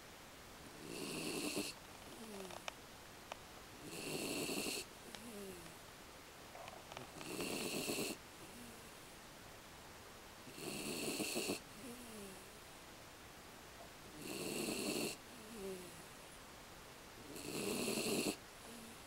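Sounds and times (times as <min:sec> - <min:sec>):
dog snoring: 0:00.7 - 0:02.6, 0:03.8 - 0:05.6, 0:07.2 - 0:08.8, 0:10.5 - 0:12.4, 0:14.2 - 0:16.0, 0:17.2 - 0:19.0.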